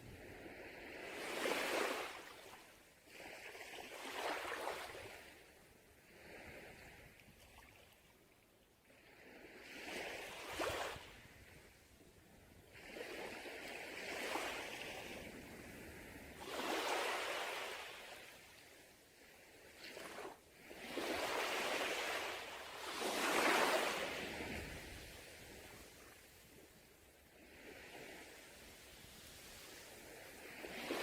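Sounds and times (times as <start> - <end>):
sea waves breaking on beach: 0.3 - 5.5, 12.7 - 18.6, 19.2 - 31.0.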